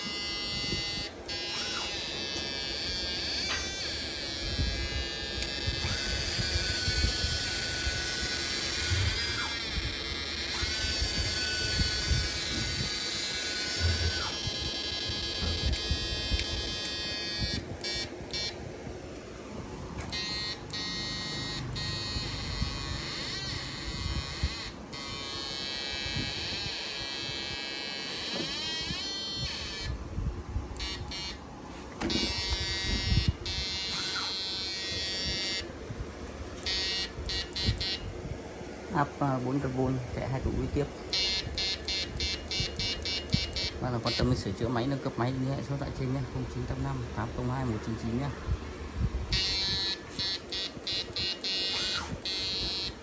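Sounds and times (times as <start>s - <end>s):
high-pitched electronic buzz: 0.0s - 18.6s, 20.0s - 30.0s, 30.8s - 31.4s, 32.0s - 35.8s, 36.6s - 38.2s, 41.1s - 44.6s, 49.3s - 53.0s.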